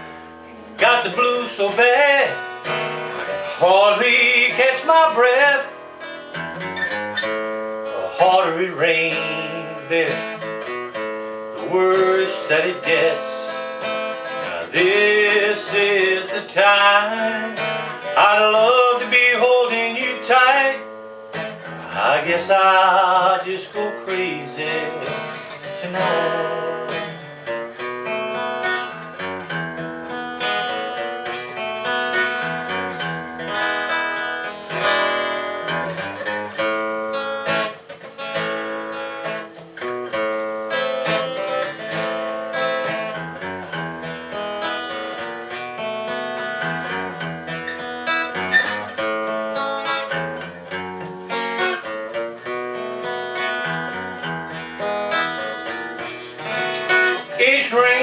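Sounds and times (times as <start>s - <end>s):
acoustic guitar playing: 0.0s - 58.0s
person singing: 0.8s - 2.6s, 3.4s - 5.8s, 7.9s - 10.5s, 11.6s - 20.9s, 21.7s - 27.3s, 56.0s - 58.0s.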